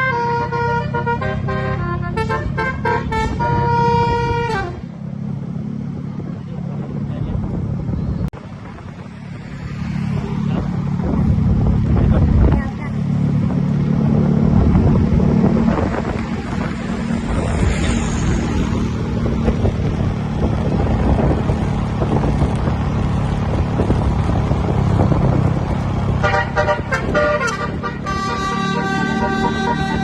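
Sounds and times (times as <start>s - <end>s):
musical bus horn tones: 0.0s - 4.9s, 26.2s - 30.0s
bus engine rumbling: 0.0s - 30.0s.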